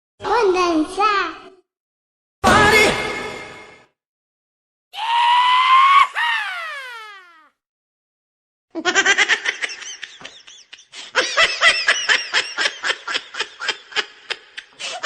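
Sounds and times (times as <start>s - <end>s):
loud rapid laughter: 8.8s - 15.0s.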